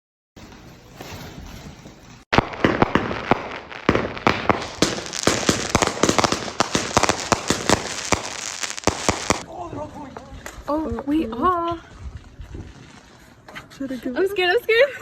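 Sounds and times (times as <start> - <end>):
fireworks banging and crackling: 2.3 - 9.5.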